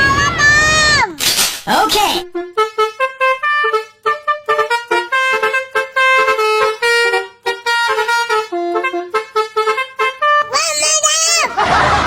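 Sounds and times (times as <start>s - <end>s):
multi-tone bus air horn melody: 2.4s - 11.0s.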